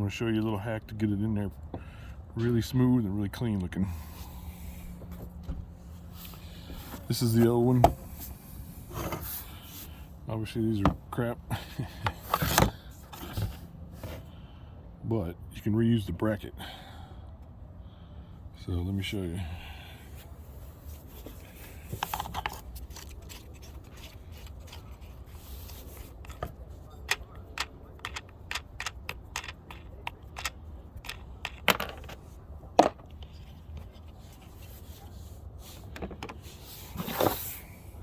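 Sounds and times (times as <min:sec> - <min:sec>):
hands clicking and scraping parts: 0:11.8 - 0:14.2, 0:20.9 - 0:35.1.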